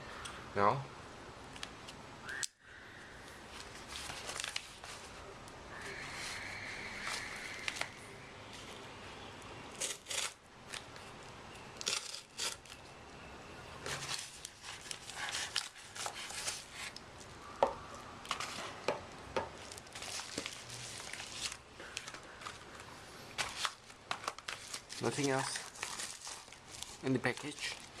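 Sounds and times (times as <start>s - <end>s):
packaging crinkling and rustling: 3.5s - 5.2s, 13.8s - 17.0s, 19.6s - 28.0s
packaging tearing: 9.8s - 10.8s, 11.8s - 12.8s, 19.6s - 22.2s, 23.4s - 28.0s.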